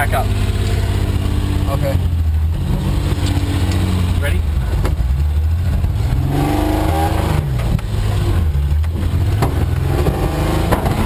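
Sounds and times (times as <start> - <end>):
truck engine revving hard: 0.0 - 11.0
sharp knocks: 8.9 - 11.0.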